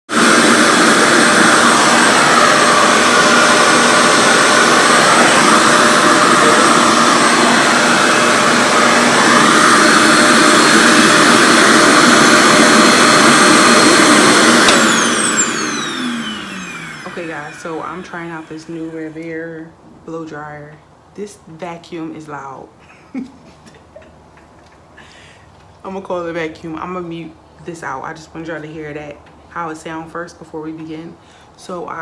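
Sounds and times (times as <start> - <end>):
motor whine spinning down: 0.1 - 19.2
blow dryer suction rush: 0.1 - 19.4.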